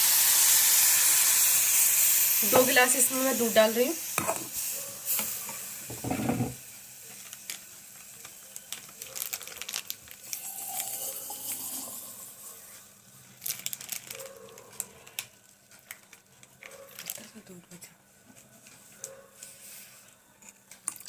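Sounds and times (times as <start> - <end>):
low simmering hiss: 0.0 - 9.0, 9.7 - 13.7
milk splashing and sizzling: 0.0 - 12.7.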